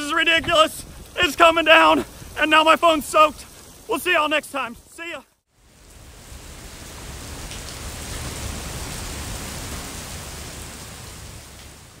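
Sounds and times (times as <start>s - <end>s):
wind rumbling on microphone: 0.0s - 3.9s, 5.7s - 12.0s
heavy rain hissing: 0.0s - 12.0s.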